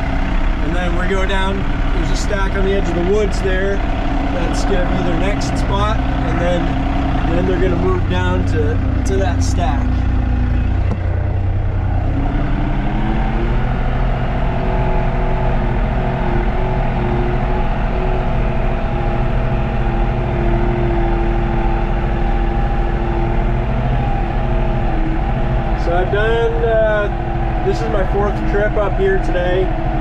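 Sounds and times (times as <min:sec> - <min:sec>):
tractor engine running: 0:00.0 - 0:30.0.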